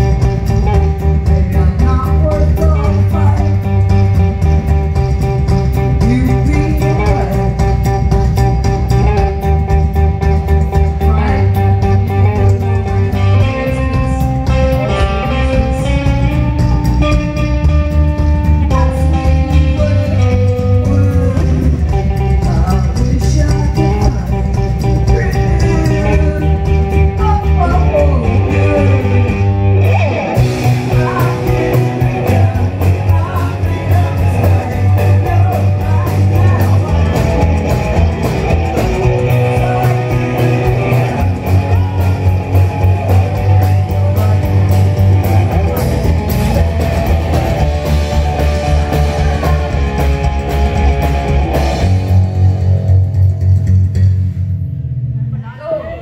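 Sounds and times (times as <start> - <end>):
drums with cymbals: 0.0 - 54.8
bass guitar: 0.0 - 56.0
electric guitar: 0.0 - 56.0.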